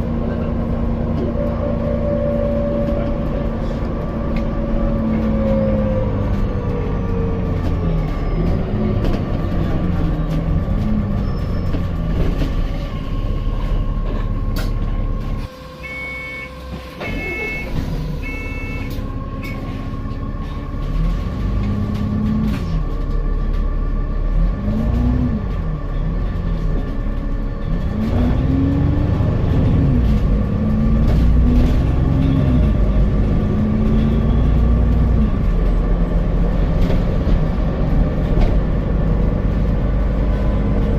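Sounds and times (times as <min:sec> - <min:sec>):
bus engine accelerating and slowing: 0:00.0 - 0:40.9
short high beeps: 0:15.8 - 0:18.9.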